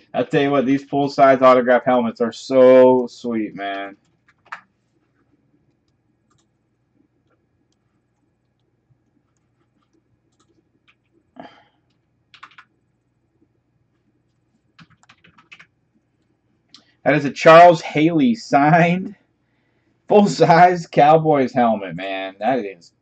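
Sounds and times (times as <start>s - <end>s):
faint clicks: 5.6s - 11.2s.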